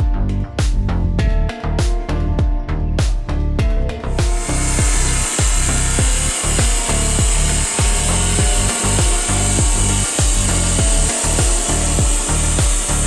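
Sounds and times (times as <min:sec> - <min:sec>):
booming bass kicks: 0:00.0 - 0:13.0
stepped bass line: 0:00.0 - 0:13.0
steady high hiss: 0:04.1 - 0:13.0.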